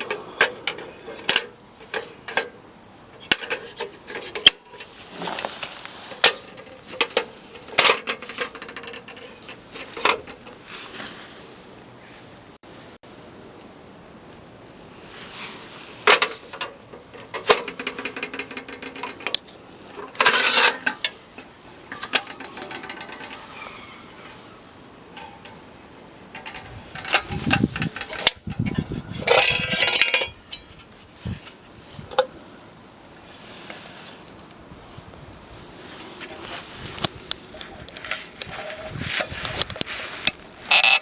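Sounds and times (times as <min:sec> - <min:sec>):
metal lamp clanking and rattling: 0:26.3 - 0:32.3, 0:37.5 - 0:41.0.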